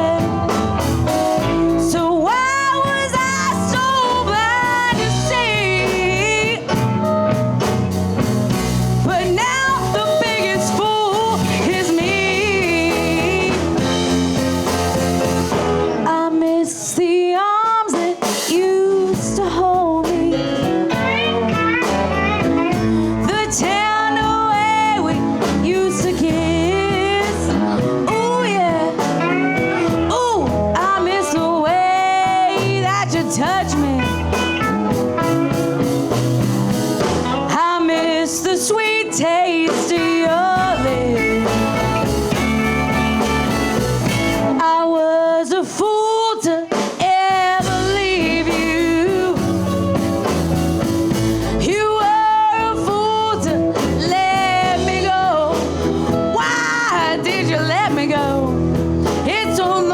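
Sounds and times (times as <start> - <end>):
blues band playing: 0.0 - 59.9
drums: 0.0 - 59.9
lead guitar bending notes: 19.1 - 37.6, 39.7 - 44.6.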